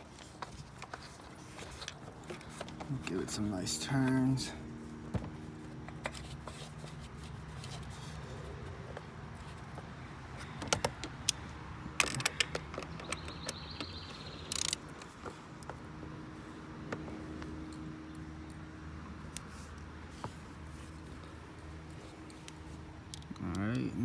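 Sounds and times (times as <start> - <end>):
hand tools clicking and tapping: 0.0 - 3.2, 8.9 - 16.1, 22.2 - 23.9.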